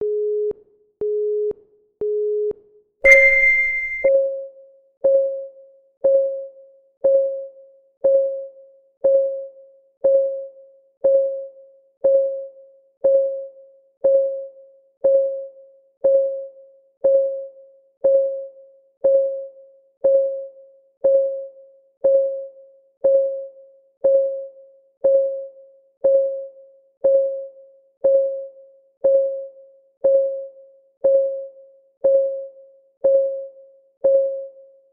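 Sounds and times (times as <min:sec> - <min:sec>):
long high beep: 0:03.1 - 0:04.1
short low beeps: 0:03.1 - 0:04.1.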